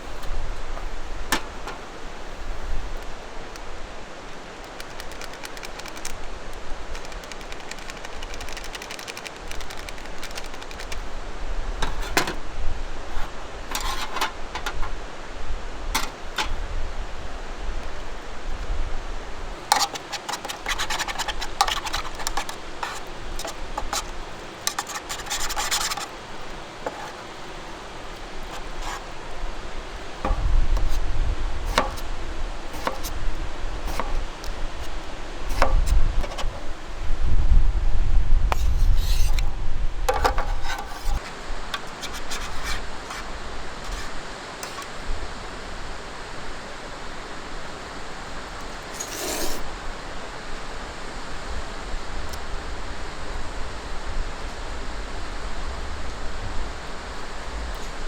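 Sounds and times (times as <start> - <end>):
gear rubbing and scraping: 11.8 - 12.4, 13.1 - 14.9, 19.6 - 31.0, 31.7 - 33.2, 33.9 - 36.8, 40.1 - 45.0, 48.9 - 49.6.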